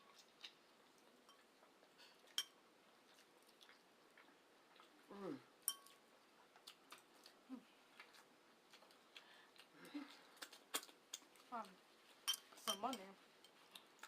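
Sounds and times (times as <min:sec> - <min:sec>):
person humming mmm: 0:05.1 - 0:05.5
chewing clicks and smacks: 0:08.0 - 0:11.5.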